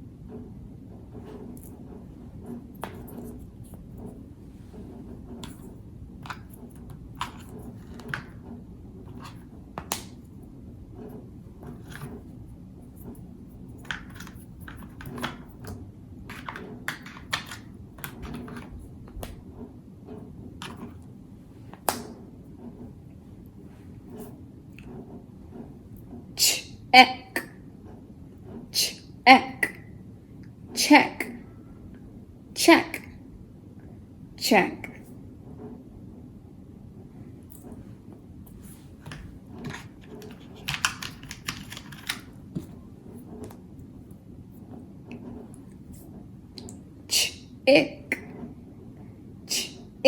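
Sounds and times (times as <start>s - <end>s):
steady low hum: 0.0s - 50.0s.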